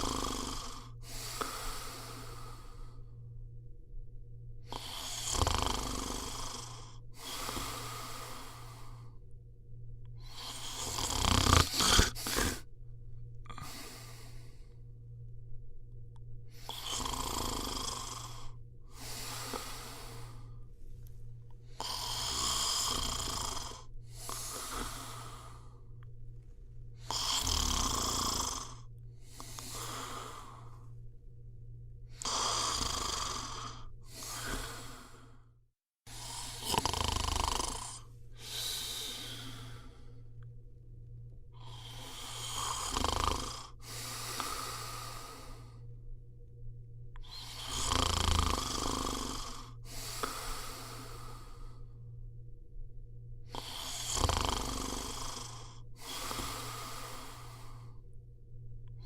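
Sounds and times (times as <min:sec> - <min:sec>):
person snoring: 0:00.0 - 0:03.2, 0:04.6 - 0:09.2, 0:10.2 - 0:12.7, 0:13.4 - 0:14.8, 0:16.5 - 0:20.7, 0:21.6 - 0:26.1, 0:27.0 - 0:31.0, 0:32.1 - 0:35.5, 0:36.1 - 0:40.5, 0:41.6 - 0:45.9, 0:47.2 - 0:52.0, 0:53.4 - 0:58.0
steady low hum: 0:00.0 - 0:59.0.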